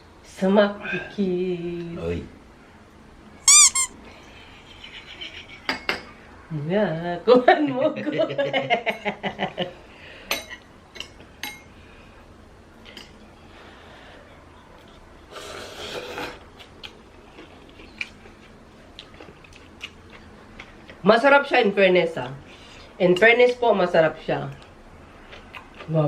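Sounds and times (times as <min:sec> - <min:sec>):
slurping noodles: 0:15.3 - 0:16.4.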